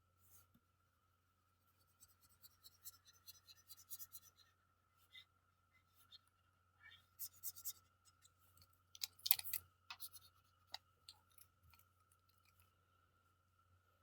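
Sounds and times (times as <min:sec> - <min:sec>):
faint high hum: 0:00.0 - 0:14.0
scratchy strokes and clicks: 0:01.8 - 0:04.4, 0:07.2 - 0:12.6.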